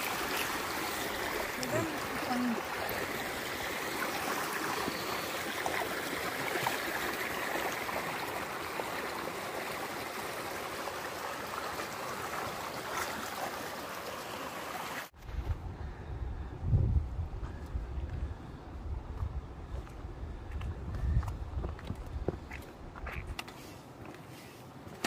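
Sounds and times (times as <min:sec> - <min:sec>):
stream water over rocks: 0:00.0 - 0:15.2
wind rumble on microphone: 0:15.2 - 0:23.4.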